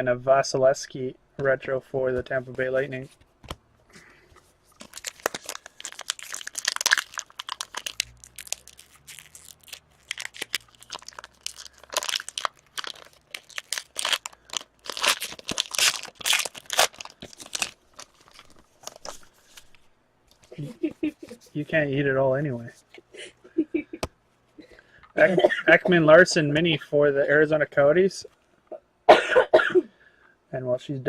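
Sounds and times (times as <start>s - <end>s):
foil wrapper tearing and crumpling: 4.8s - 19.3s.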